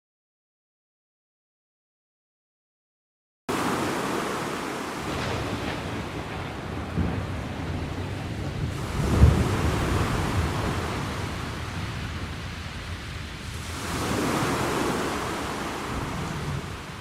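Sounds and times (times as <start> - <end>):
sea surf hissing: 3.5 - 5.5, 13.4 - 17.0
wind buffeting the microphone: 4.1 - 17.0.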